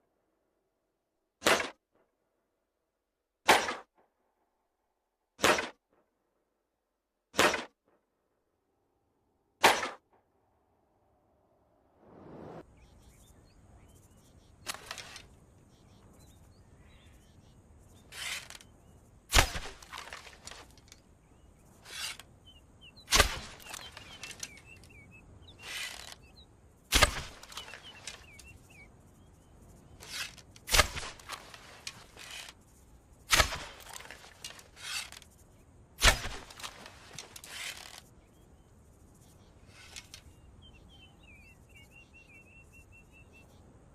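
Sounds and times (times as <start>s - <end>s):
arrow shot sharp crack: 1.4s - 1.8s, 3.4s - 4.0s, 5.4s - 5.8s, 7.3s - 7.8s, 9.6s - 10.2s, 19.3s - 20.7s, 23.0s - 24.6s, 26.9s - 28.4s, 30.2s - 32.2s, 33.3s - 35.0s, 36.0s - 38.0s
arrow swishing: 9.6s - 10.0s, 12.0s - 12.6s, 19.3s - 20.8s, 23.1s - 24.5s, 26.9s - 28.3s, 30.0s - 32.6s, 33.3s - 35.2s, 36.0s - 38.0s
faint bird chirps: 12.0s - 19.2s, 19.8s - 30.5s, 36.8s - 43.9s.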